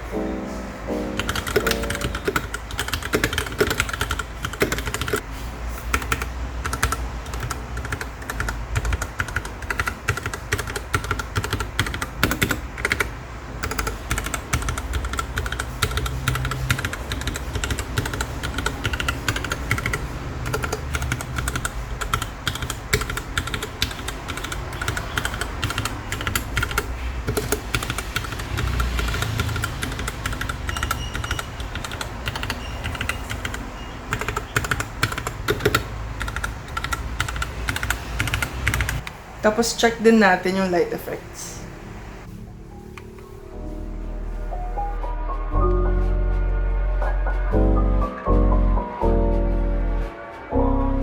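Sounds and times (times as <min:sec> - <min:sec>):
mechanical keyboard typing: 0:01.0 - 0:05.2, 0:05.9 - 0:39.2.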